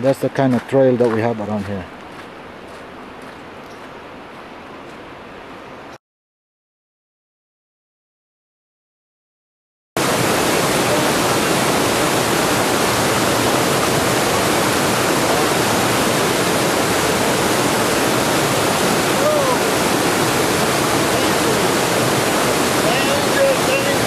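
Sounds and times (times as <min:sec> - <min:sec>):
stream cascading over rocks: 0:10.0 - 0:24.0.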